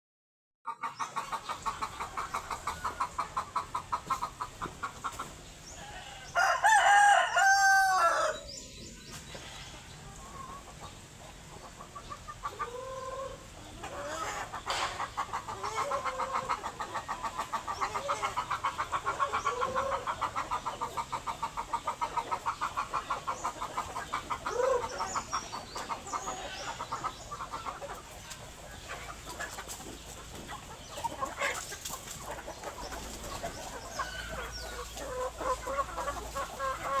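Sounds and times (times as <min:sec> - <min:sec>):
chickens clucking: 0:00.7 - 0:37.0
rooster crowing: 0:05.8 - 0:08.5.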